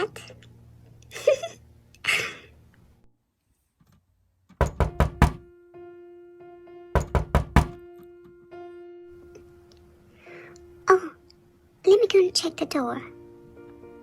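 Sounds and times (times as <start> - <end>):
knocking on a door: 4.6 - 5.4, 7.0 - 7.8.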